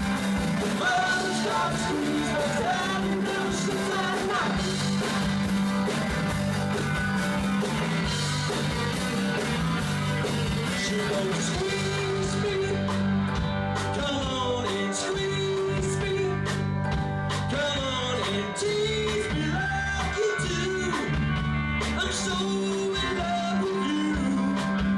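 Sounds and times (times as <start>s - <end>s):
rock band playing: 0.0s - 24.9s
person singing: 0.6s - 5.2s, 10.6s - 13.0s, 13.8s - 16.6s, 17.5s - 21.2s, 21.9s - 24.9s.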